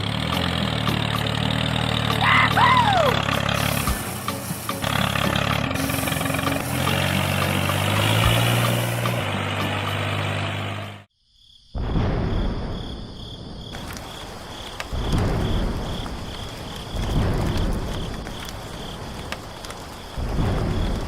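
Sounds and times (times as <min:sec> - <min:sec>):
hiss: 0:03.4 - 0:09.3
crickets chirping: 0:11.1 - 0:21.0.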